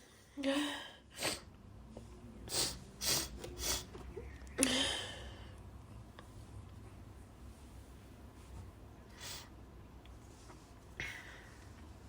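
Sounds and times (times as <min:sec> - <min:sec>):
woman sniffing: 0:02.5 - 0:04.0.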